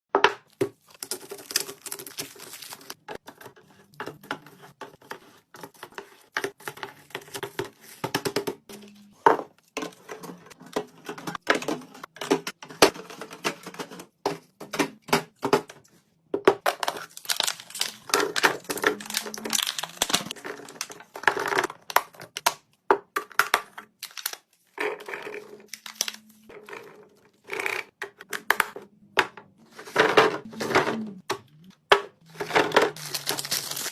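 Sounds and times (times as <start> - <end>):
containers clicking and knocking: 0.1 - 33.9
plastic packaging crinkling: 0.8 - 3.0, 16.9 - 21.2, 25.6 - 26.5, 32.3 - 33.9.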